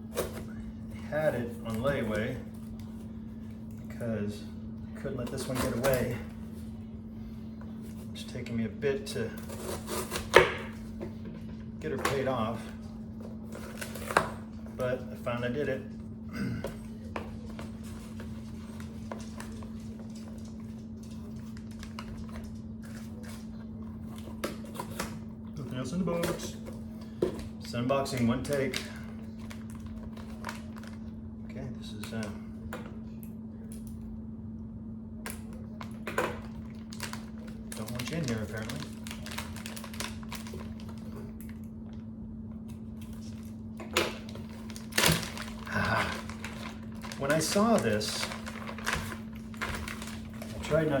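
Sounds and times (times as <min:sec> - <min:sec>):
steady low hum: 0:00.0 - 0:51.0
packaging clicks and rustles: 0:28.1 - 0:31.1, 0:35.7 - 0:41.6, 0:43.0 - 0:51.0
box packaging rustling and tapping: 0:43.9 - 0:51.0.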